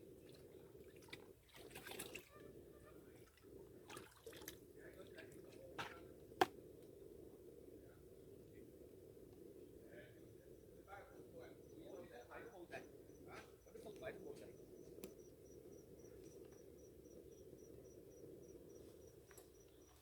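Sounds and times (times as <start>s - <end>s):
steady low hum: 0.0s - 20.0s
splashing and dripping water: 0.2s - 2.3s, 3.2s - 6.0s.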